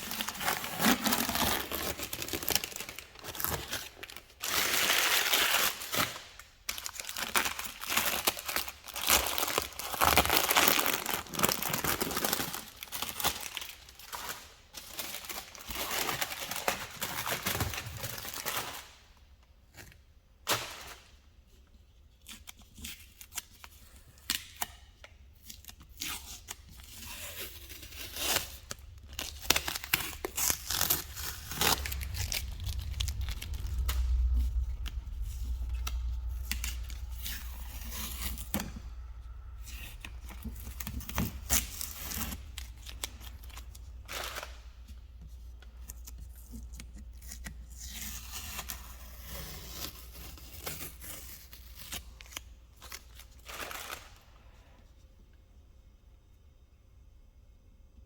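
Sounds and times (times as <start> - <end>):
tape and paper tearing: 25.4 - 38.8, 45.8 - 54.2
low hum: 27.6 - 47.2.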